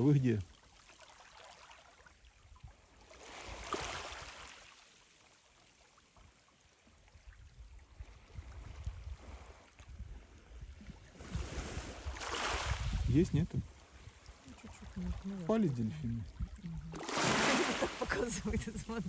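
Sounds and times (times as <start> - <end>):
wind buffeting microphone: 7.4 - 19.0
sea surf washing in: 17.0 - 19.0.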